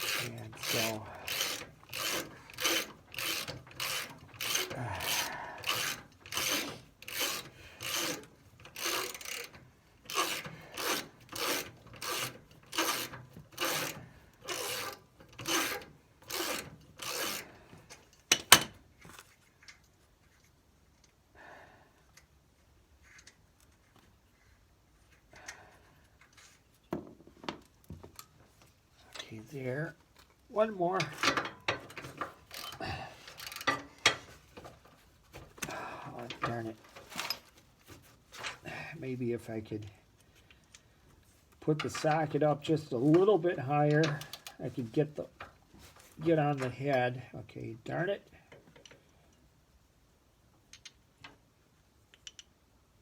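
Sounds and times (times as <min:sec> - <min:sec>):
socket ratchet ratcheting: 0:00.0 - 0:17.4
faint handling sounds: 0:17.7 - 0:21.3, 0:22.0 - 0:49.5.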